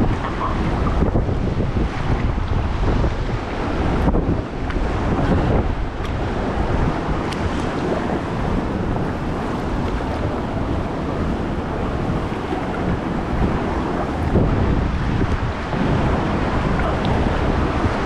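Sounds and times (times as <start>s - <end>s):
ocean surf: 0.0s - 18.0s
wind buffeting microphone: 0.0s - 18.0s.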